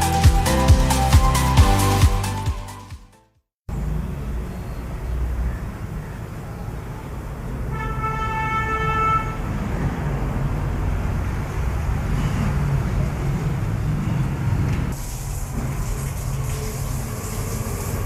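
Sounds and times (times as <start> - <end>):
road traffic rumble: 3.7 - 18.0
vehicle horn: 7.7 - 9.5.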